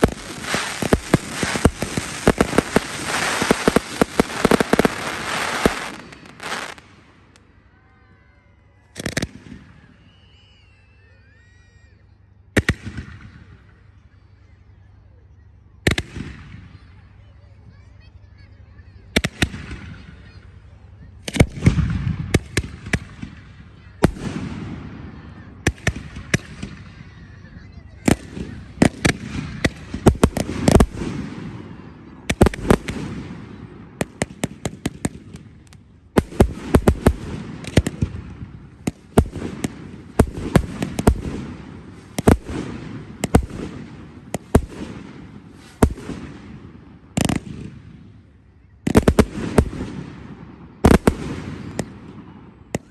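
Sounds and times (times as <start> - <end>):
fireworks bangs: 0.0 - 7.4, 21.2 - 52.9
rumble after fireworks: 0.0 - 52.9.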